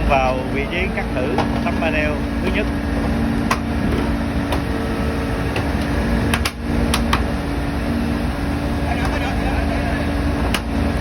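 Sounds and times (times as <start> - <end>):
machinery hum: 0.0 - 11.0.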